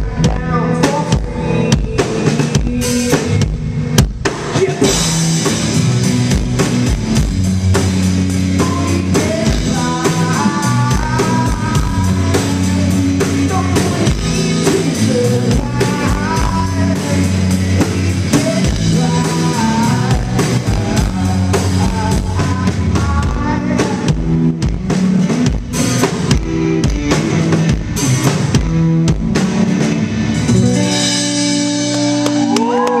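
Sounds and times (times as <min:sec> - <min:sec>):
person singing: 0:00.0 - 0:03.5, 0:08.5 - 0:24.6, 0:30.5 - 0:33.0
drum kit: 0:00.0 - 0:33.0
electric guitar: 0:00.0 - 0:33.0.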